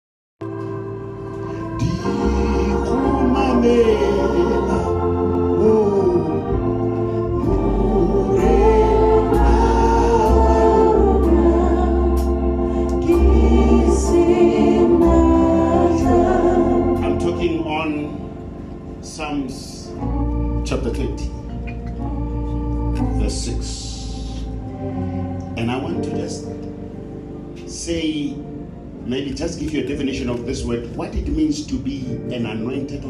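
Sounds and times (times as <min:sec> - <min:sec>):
organ music: 0:00.4 - 0:33.0
person singing: 0:01.6 - 0:17.7.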